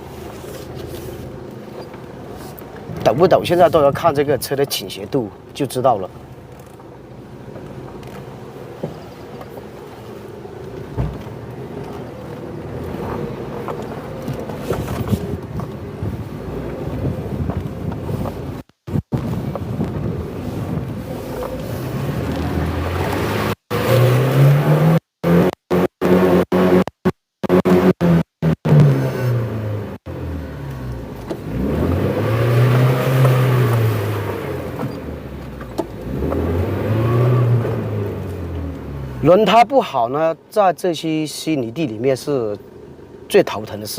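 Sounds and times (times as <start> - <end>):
car engine running: 0.0 - 23.9
wind noise on microphone: 14.3 - 23.1
engine revving: 21.1 - 35.2, 35.8 - 39.3.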